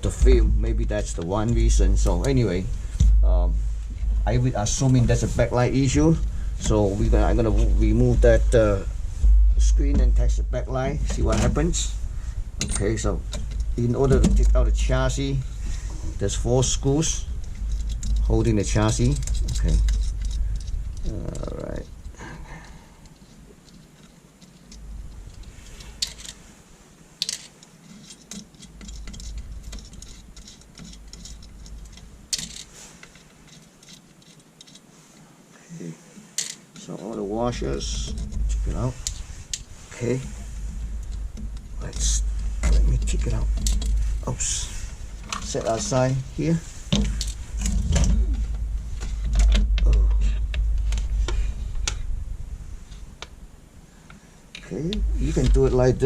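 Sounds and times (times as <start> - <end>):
low rumble of handling bumps: 0.0 - 26.6, 27.9 - 34.2, 36.7 - 56.0
monitor parts clicking and knocking: 9.3 - 11.9, 12.6 - 15.4, 16.8 - 21.7, 27.2 - 34.9, 41.0 - 44.6, 45.2 - 52.0
screwdriver removing screws: 27.2 - 34.9.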